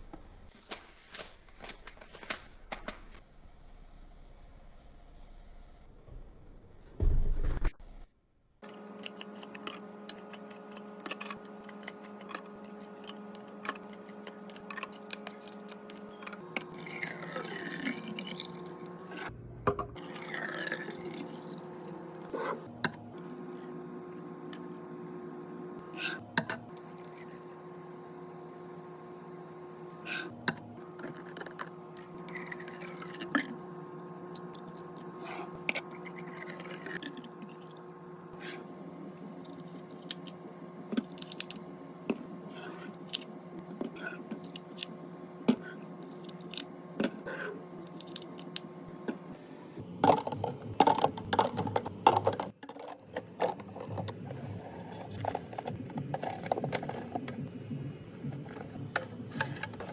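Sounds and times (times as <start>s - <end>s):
fridge hum: 0.0s - 59.9s
drinks and snacks being handled: 50.0s - 57.4s.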